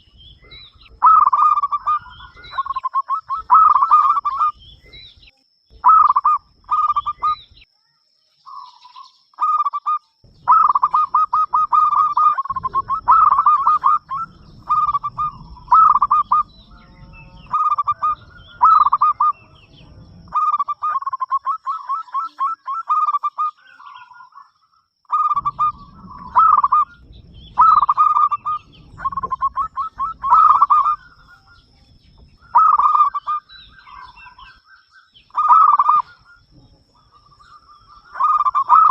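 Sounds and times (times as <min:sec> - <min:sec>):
dove cooing: 0:00.0 - 0:07.6, 0:08.5 - 0:38.9
faint high whine: 0:10.0 - 0:22.6.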